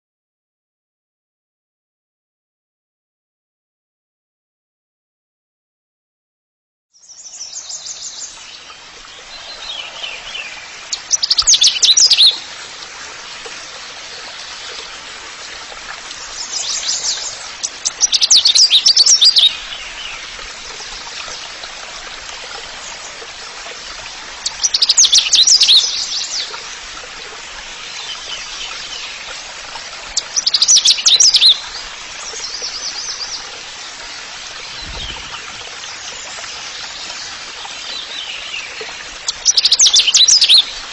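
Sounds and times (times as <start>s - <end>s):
songbirds chirping and trilling: 7.0s - 12.5s, 13.2s - 21.4s, 22.5s - 26.6s, 30.1s - 40.9s
running water: 7.0s - 40.9s.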